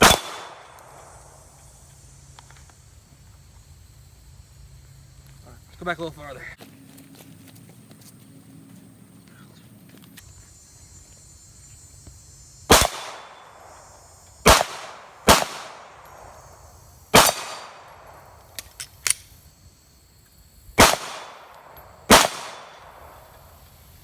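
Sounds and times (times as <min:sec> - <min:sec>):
pistol shots with echo: 0:00.0 - 0:01.1, 0:12.7 - 0:13.7, 0:14.4 - 0:16.3, 0:17.1 - 0:18.1, 0:20.8 - 0:23.2.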